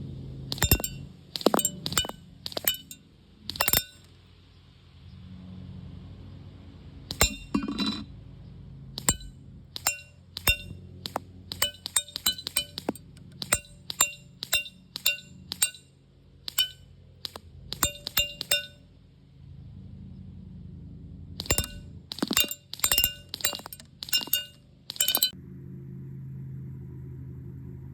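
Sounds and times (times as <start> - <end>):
pellets hitting metal target: 0.5 - 4.0, 7.1 - 8.0, 9.0 - 15.9, 16.5 - 18.8, 21.4 - 25.3.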